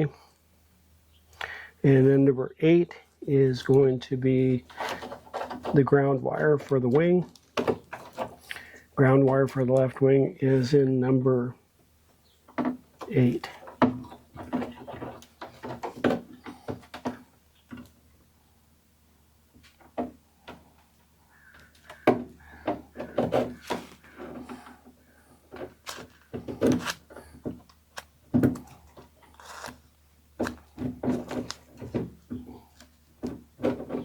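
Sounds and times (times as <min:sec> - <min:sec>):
clicks and knocks of wiring: 0:25.5 - 0:29.8, 0:30.4 - 0:34.0.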